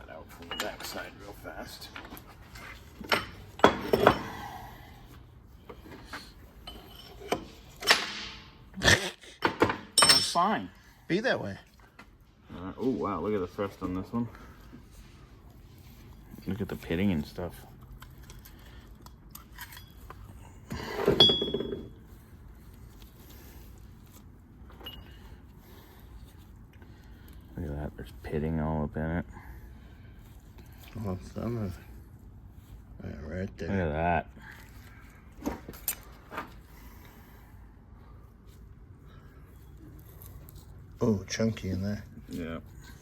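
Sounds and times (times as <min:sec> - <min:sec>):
steel parts clinking: 0:00.3 - 0:01.3, 0:01.9 - 0:04.4, 0:06.5 - 0:08.7, 0:09.6 - 0:10.6.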